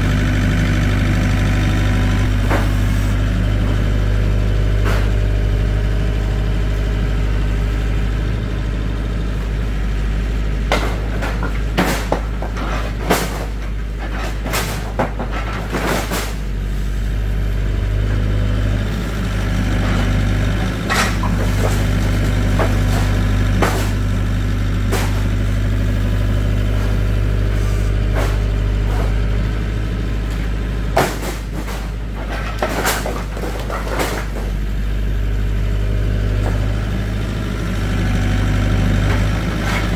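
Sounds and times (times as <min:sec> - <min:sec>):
engine idling: 0:00.0 - 0:39.9
sharp knocks and clatters: 0:10.7 - 0:16.4, 0:20.9 - 0:24.1, 0:30.9 - 0:34.6.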